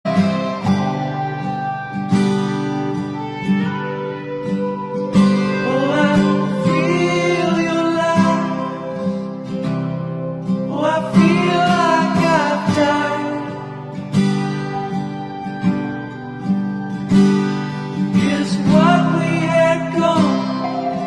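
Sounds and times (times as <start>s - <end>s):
acoustic guitar music: 0.0s - 21.0s
person singing: 4.7s - 14.1s, 18.0s - 21.0s.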